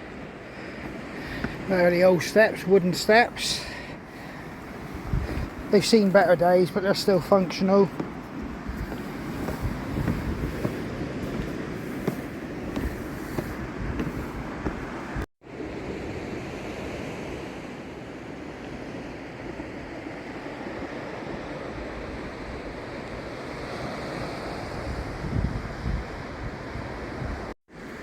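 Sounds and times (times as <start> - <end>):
ocean surf washing ashore: 0.0 - 28.0
wind buffeting microphone: 0.8 - 15.3, 24.8 - 27.5.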